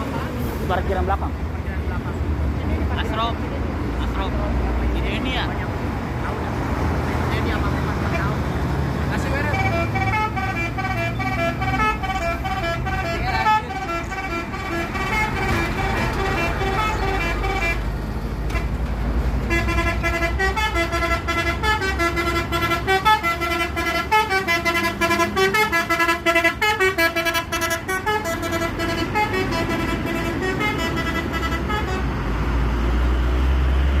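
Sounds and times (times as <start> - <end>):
bus engine running: 0.0 - 34.0
multi-tone musical air horn: 9.4 - 17.8, 19.5 - 32.1.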